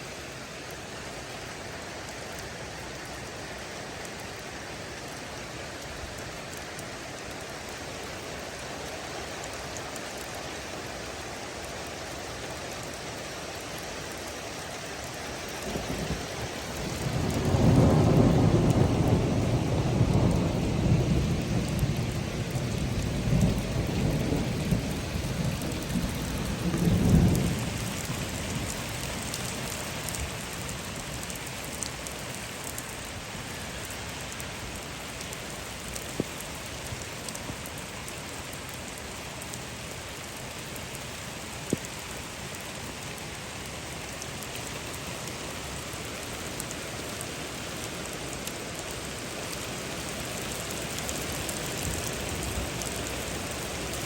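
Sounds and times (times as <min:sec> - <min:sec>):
steady rain falling: 0:00.0 - 0:54.0
thunder rumbling: 0:15.6 - 0:30.6.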